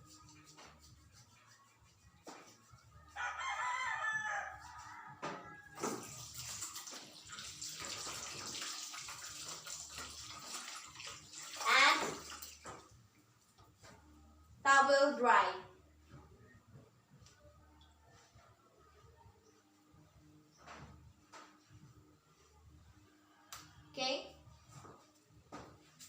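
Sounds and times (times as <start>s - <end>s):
rooster crowing: 3.1s - 5.8s
tap water running over hands: 5.7s - 12.9s.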